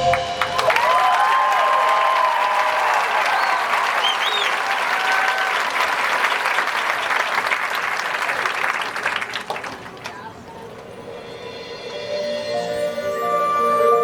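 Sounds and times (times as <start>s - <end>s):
crowd applauding and cheering: 0.0s - 10.8s
high whoops: 0.6s - 5.8s.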